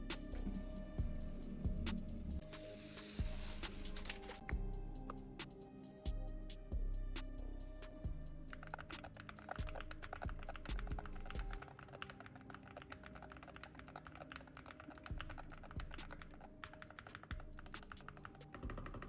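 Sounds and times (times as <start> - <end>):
background music: 0.0 - 19.0
rapid keyboard typing: 2.4 - 4.5, 8.5 - 19.0.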